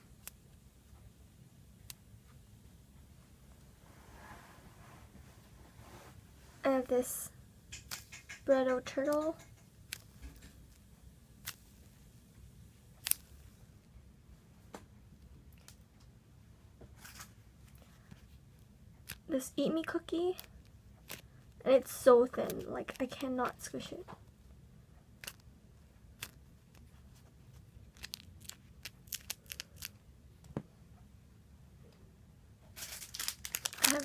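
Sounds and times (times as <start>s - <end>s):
sharp toy clicks: 7.7s - 10.1s, 33.1s - 34.0s
packaging crackling: 27.9s - 30.0s, 32.8s - 34.0s.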